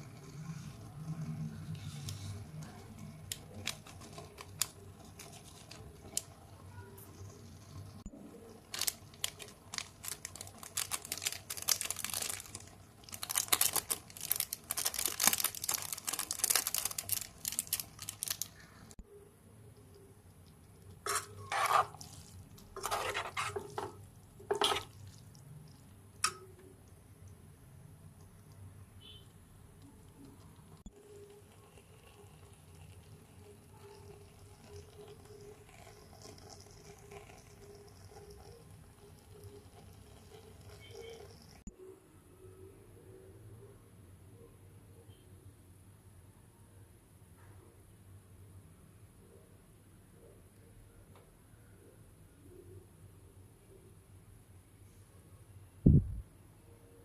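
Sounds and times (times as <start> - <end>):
metal utensil scraping cookware: 21.0 - 25.0.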